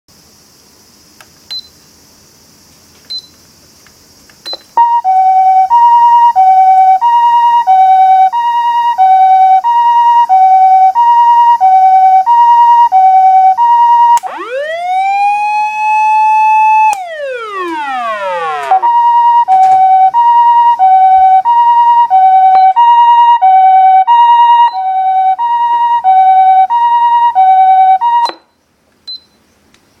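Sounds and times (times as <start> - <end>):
wailing siren: 4.8 - 28.3
two-tone hi-lo siren: 4.8 - 28.4
clicks: 14.2 - 14.5, 16.6 - 18.9.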